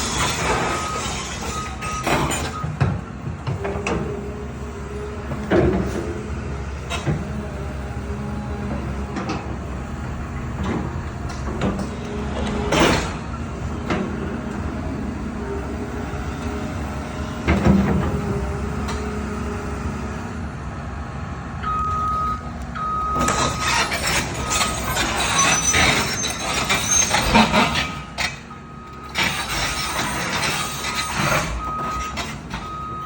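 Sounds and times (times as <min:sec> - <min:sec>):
heavy diesel vehicle running: 0:00.0 - 0:33.0
warning alarm beeps: 0:21.6 - 0:26.2.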